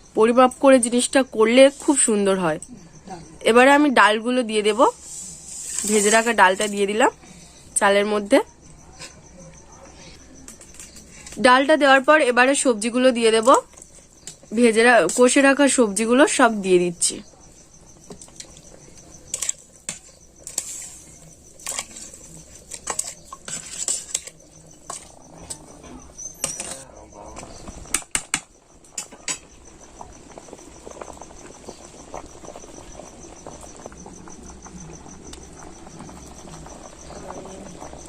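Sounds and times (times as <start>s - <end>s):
metal spoon scraping cooking pot: 5.0s - 6.9s, 19.3s - 26.8s.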